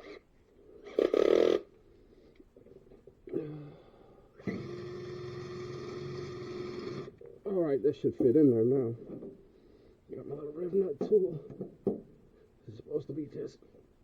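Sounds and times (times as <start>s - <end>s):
electric drill running: 4.4s - 7.1s.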